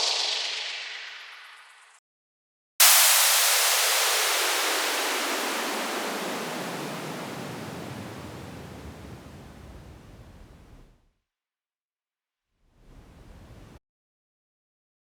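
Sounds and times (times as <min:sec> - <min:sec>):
white noise sliding down in pitch: 0:00.0 - 0:01.8, 0:02.8 - 0:10.0.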